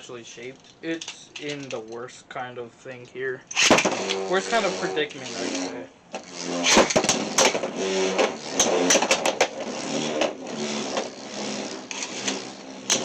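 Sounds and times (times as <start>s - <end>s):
spinning tops clacking together: 0.5s - 2.1s, 3.5s - 5.6s, 6.2s - 13.0s
spinning tops whirring: 3.5s - 13.0s.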